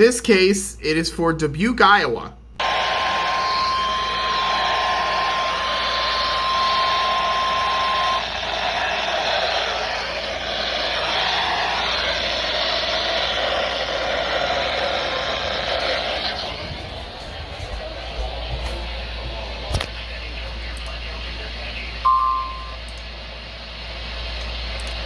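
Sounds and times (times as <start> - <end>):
steady warning alarm tone: 2.6 - 16.3, 22.0 - 23.0
radio static hiss: 2.6 - 22.1.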